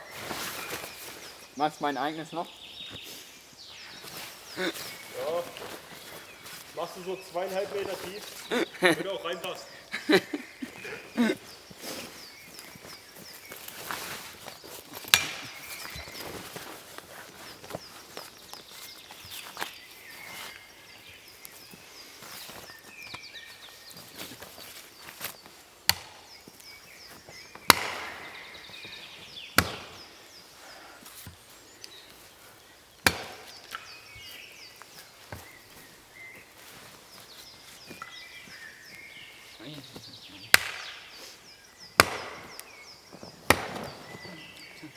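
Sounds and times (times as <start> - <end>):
small birds chirping: 0.0 - 44.9
axe chopping wood: 15.0 - 16.6, 25.9 - 26.6, 27.5 - 29.0, 29.6 - 30.1, 33.0 - 34.0, 40.5 - 41.2, 41.9 - 42.8, 43.4 - 44.6.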